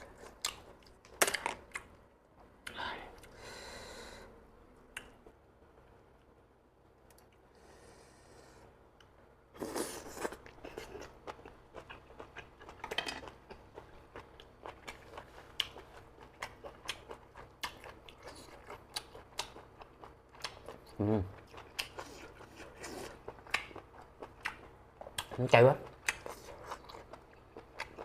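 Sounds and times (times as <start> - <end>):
person chewing crunchy food: 0.0 - 1.9, 9.6 - 28.0.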